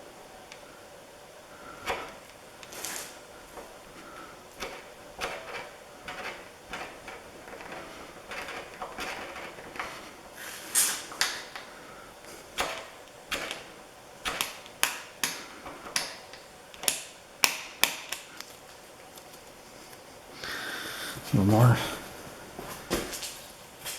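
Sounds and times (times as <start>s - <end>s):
tool scraping paint off metal: 1.7s - 11.4s.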